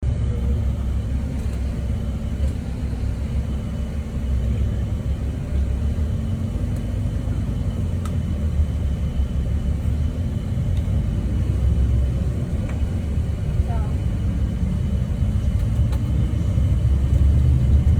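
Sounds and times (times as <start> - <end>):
traffic engine rumble: 0.0 - 17.9.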